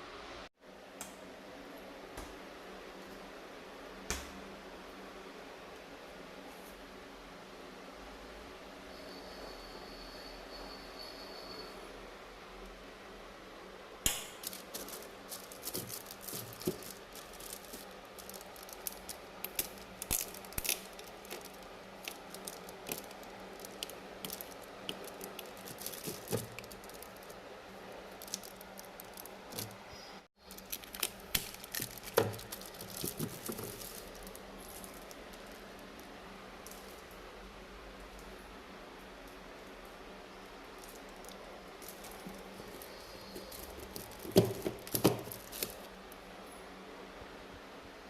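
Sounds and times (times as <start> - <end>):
faint steady hum: 0.0 - 48.0
objects clicking and rattling: 14.4 - 27.4, 28.0 - 29.8, 30.4 - 37.0, 40.8 - 45.9.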